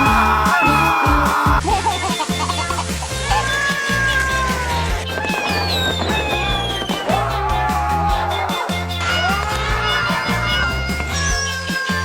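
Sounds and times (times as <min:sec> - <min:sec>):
background music with steady beat: 0:00.0 - 0:12.0
cat meowing: 0:09.0 - 0:12.0.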